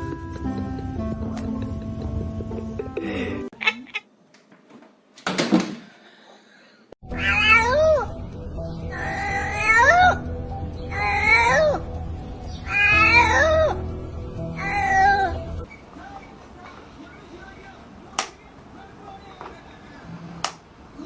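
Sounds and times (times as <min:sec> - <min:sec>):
background music: 0:00.0 - 0:03.6, 0:07.0 - 0:15.7
cat meowing: 0:07.1 - 0:08.0, 0:09.0 - 0:10.2, 0:10.9 - 0:11.8, 0:12.6 - 0:13.7, 0:14.6 - 0:15.3.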